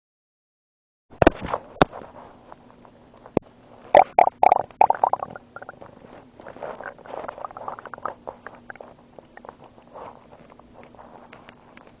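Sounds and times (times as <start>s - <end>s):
stomach gurgling: 3.9s - 10.7s.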